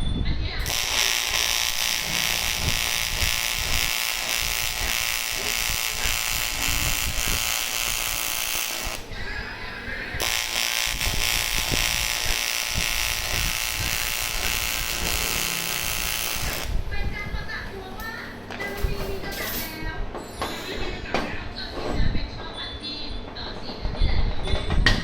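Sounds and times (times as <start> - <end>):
welding arc buzzing hiss: 0.6 - 9.2, 10.0 - 16.9.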